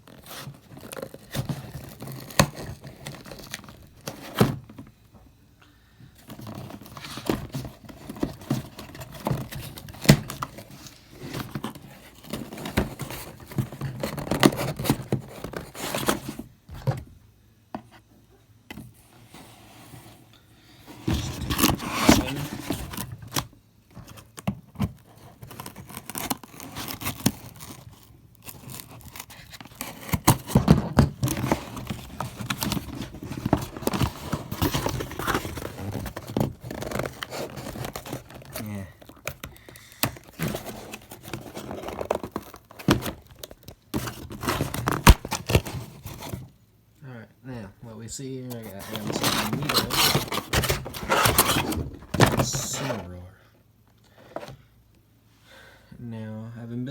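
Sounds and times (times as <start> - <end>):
knife cutting and scraping cardboard: 20.9 - 23.5, 24.8 - 43.2, 48.5 - 53.1.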